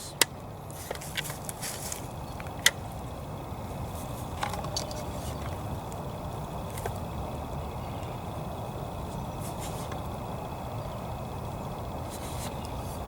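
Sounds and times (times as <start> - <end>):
low background noise: 0.0 - 13.0.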